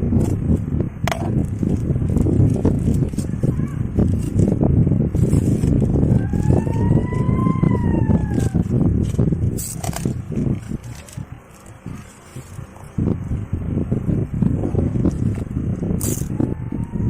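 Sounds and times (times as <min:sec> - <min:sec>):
wind rumble on microphone: 0:00.0 - 0:17.0
marmot screaming: 0:06.1 - 0:08.7.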